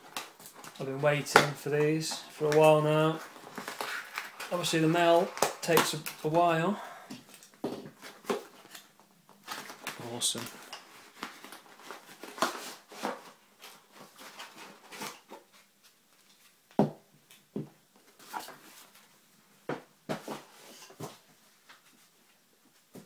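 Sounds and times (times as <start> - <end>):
packaging rustling and crinkling: 0.0 - 6.6, 7.2 - 16.6.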